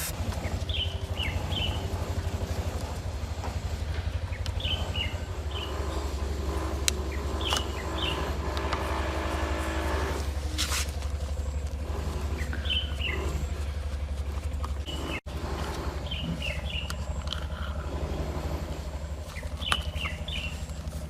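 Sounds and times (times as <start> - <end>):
steady low hum: 0.0 - 21.0
small birds chirping: 0.1 - 9.0, 11.1 - 21.0.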